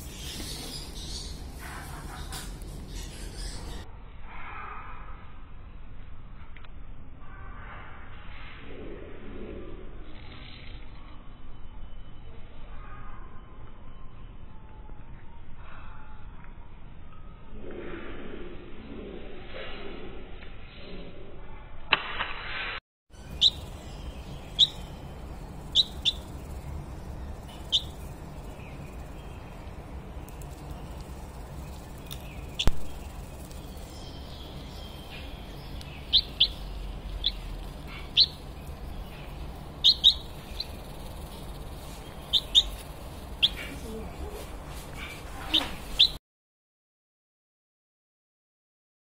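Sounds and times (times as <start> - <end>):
small bird chirping: 0.0 - 3.9, 23.2 - 46.2
low hum: 23.1 - 45.0.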